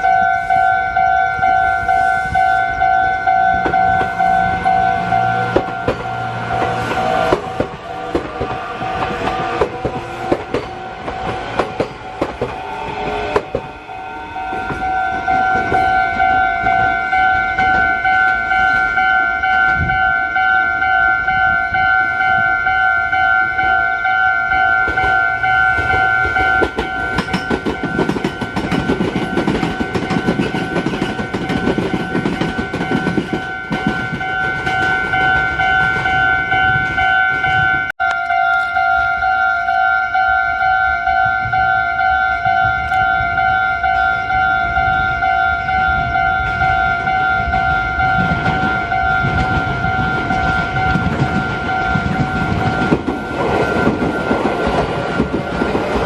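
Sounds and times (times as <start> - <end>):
level crossing alarm bell ringing: 0.0 - 56.0
train wheels clattering over rail joints: 5.4 - 13.7, 24.8 - 37.6, 48.0 - 56.0.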